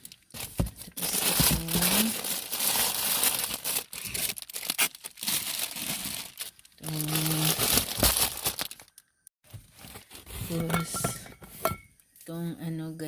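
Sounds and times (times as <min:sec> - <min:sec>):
plastic wrappers crinkling: 0:00.0 - 0:10.3.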